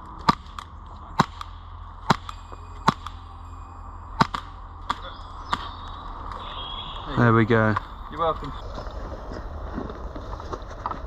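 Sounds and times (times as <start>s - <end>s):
airsoft gun shots: 0.2s - 3.2s, 4.2s - 5.9s.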